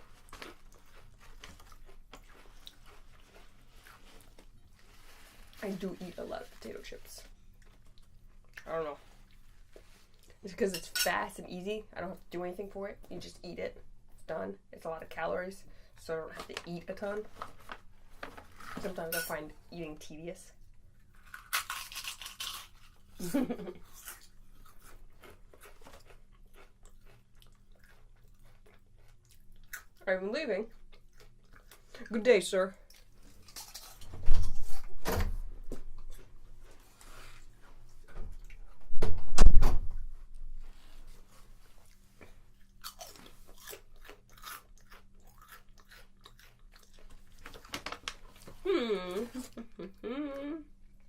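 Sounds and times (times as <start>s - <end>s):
potato chips crunching: 0.0s - 6.8s, 21.1s - 23.1s, 23.9s - 30.0s, 33.0s - 34.1s, 42.6s - 47.8s
loud bite into potato chip: 21.3s - 22.8s.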